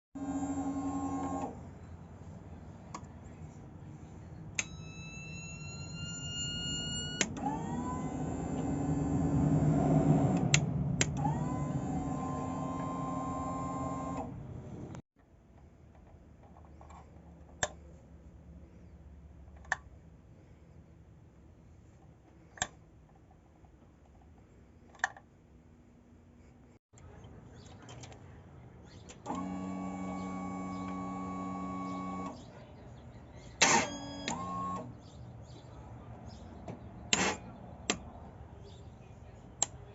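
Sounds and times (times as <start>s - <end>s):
electric starter whirring: 0.2s - 1.6s, 4.6s - 14.5s, 29.1s - 32.4s, 33.6s - 35.0s
sharp clicks: 10.4s - 11.4s.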